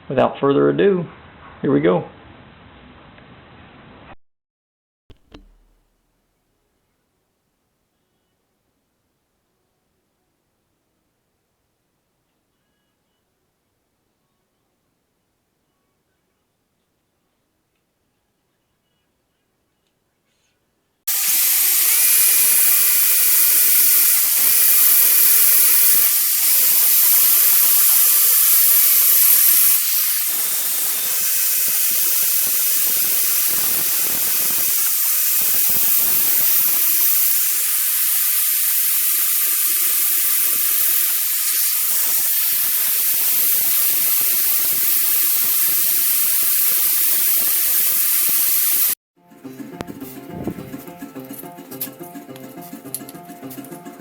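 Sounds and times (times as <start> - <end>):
power grinder grinding steel: 21.1 - 49.0.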